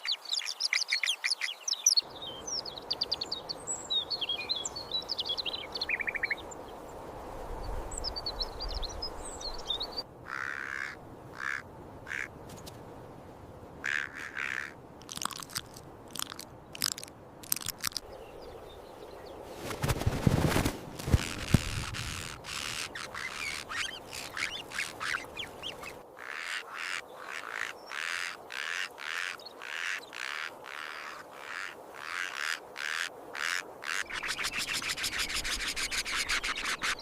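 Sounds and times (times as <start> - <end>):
ravens calling harshly: 10.2 - 12.3, 13.8 - 15.6, 22.0 - 34.4
quick rasping sounds: 15.0 - 18.0, 19.6 - 24.4
rustling burst with thumps: 19.6 - 22.4.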